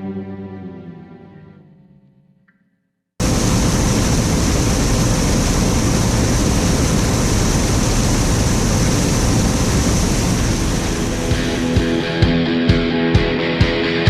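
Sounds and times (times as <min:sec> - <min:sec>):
combine harvester rumbling: 0:03.2 - 0:12.1.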